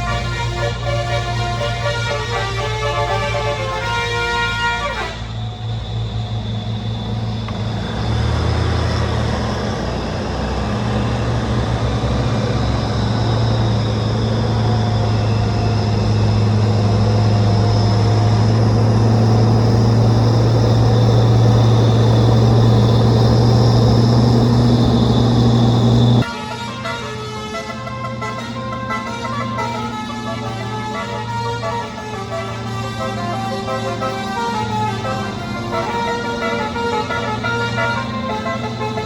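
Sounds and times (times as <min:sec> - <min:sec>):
truck engine droning: 0:00.0 - 0:39.0.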